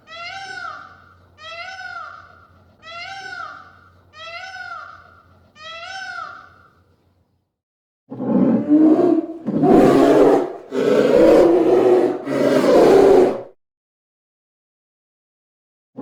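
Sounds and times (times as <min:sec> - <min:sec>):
animal roaring: 0:08.1 - 0:13.6.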